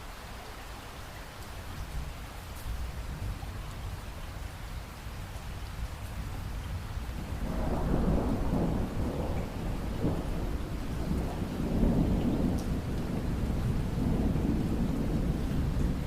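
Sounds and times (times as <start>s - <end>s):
steady rain: 0.0s - 16.0s
thunder rumbling: 5.2s - 16.0s.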